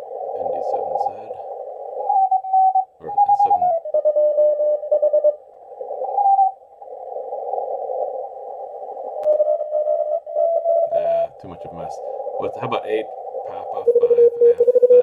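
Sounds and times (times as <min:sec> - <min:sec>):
radio band hiss: 0:00.0 - 0:01.8, 0:10.9 - 0:15.0.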